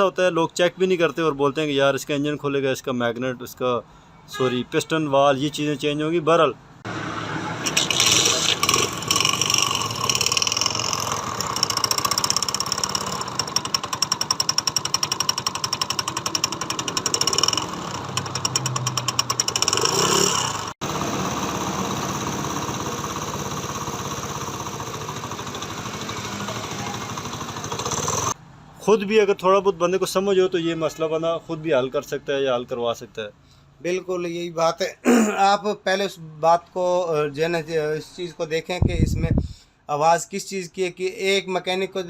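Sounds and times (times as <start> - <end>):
rapid metallic clatter: 7.7 - 20.8
motorcycle engine running: 7.8 - 28.4.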